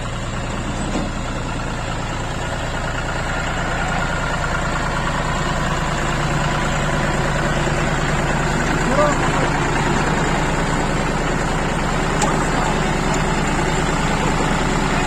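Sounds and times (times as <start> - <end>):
diesel engine running: 0.0 - 15.0.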